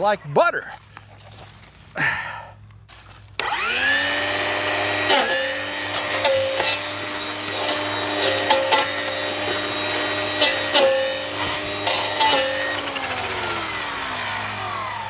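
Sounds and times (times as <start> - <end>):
stems cracking: 2.9 - 15.0
electric brush cutter whining: 3.2 - 15.0.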